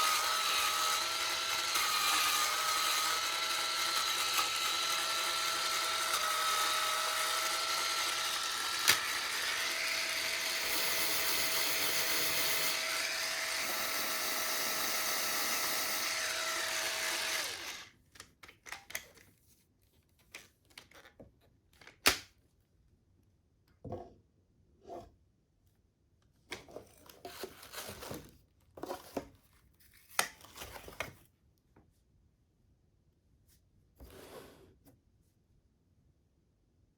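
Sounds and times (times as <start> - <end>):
spin scrubber motor whine: 0.0 - 17.9.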